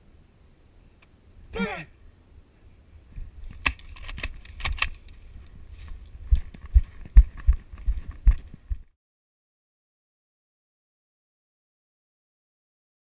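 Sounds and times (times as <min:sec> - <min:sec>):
sharp clicks and rattles: 0:03.4 - 0:05.6.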